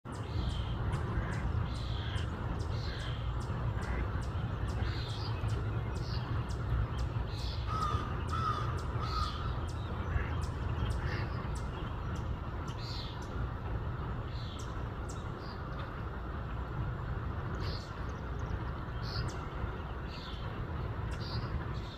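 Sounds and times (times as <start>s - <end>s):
steady low rumble: 0.1s - 21.9s
bird cawing: 7.3s - 10.2s.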